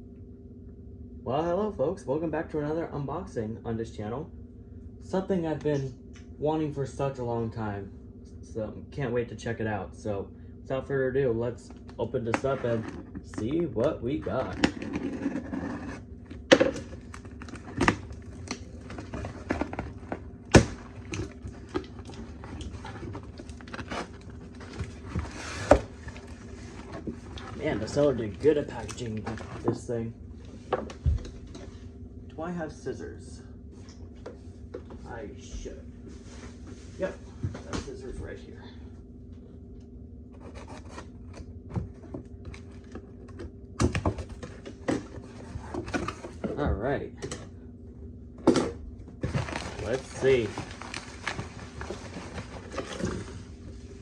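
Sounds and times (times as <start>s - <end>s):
rustling and scraping: 12.3s - 13.6s, 14.2s - 31.9s, 49.2s - 54.0s
packing material crinkling: 16.8s - 29.7s, 49.2s - 53.3s.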